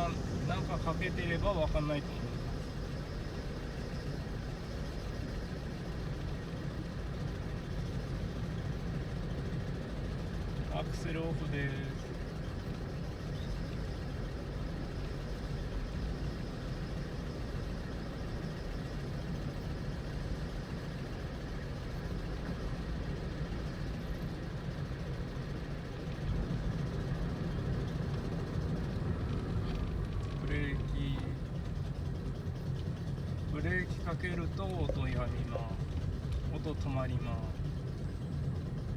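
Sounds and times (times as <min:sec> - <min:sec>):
car road rumble: 0:25.2 - 0:38.9.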